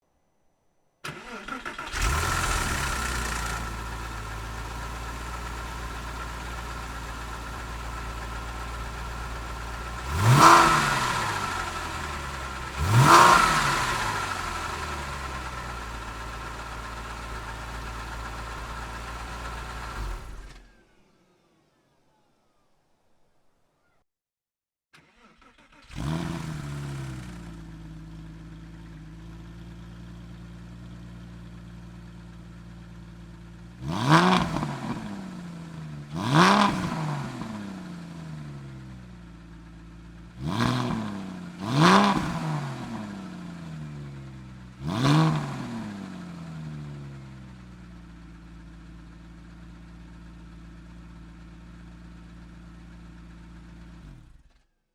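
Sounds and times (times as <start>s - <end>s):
starter motor cranking: 1.0s - 3.2s
car engine idling and revving: 1.1s - 20.7s, 25.0s - 54.8s.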